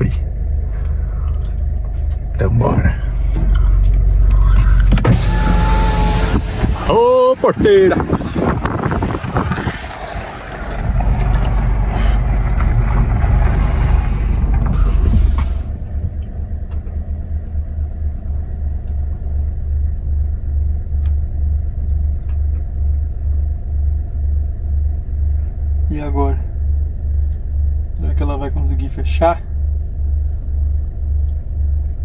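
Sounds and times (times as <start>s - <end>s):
car engine idling: 0.0s - 32.0s
wind rumbling on microphone: 2.9s - 16.7s.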